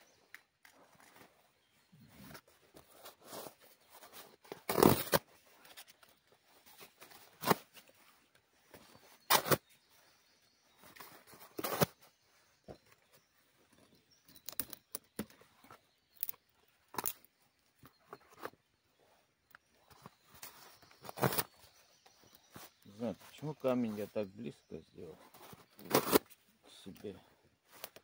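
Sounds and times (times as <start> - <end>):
dry twigs cracking and rustling: 16.1 - 18.0.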